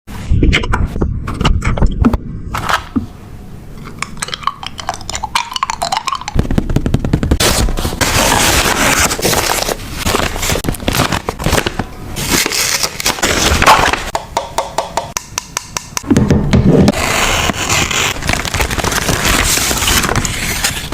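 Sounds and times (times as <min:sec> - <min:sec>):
paper and plastic crinkling: 0:07.3 - 0:14.1, 0:18.0 - 0:20.9.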